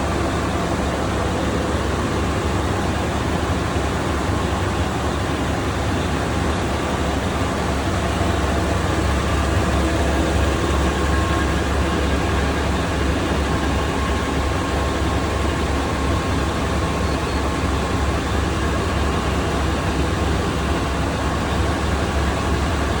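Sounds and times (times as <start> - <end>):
engine room machinery droning: 0.0 - 23.0.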